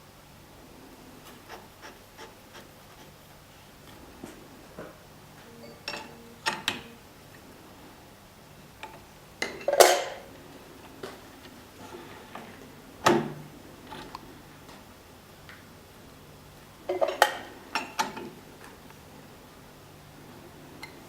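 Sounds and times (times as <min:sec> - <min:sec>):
faint low hum: 0:00.0 - 0:09.2.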